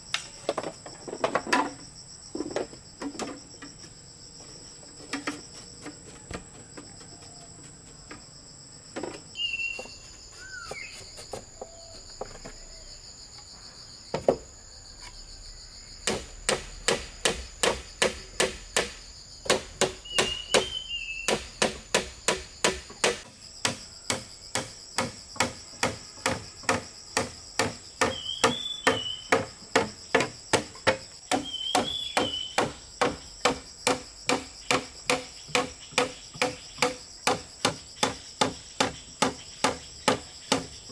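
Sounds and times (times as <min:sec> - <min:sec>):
insects buzzing: 0:00.0 - 0:40.9
bird chirps: 0:09.3 - 0:13.0, 0:20.0 - 0:21.4, 0:28.0 - 0:29.4, 0:31.3 - 0:32.7
hand tool strikes: 0:16.0 - 0:40.7.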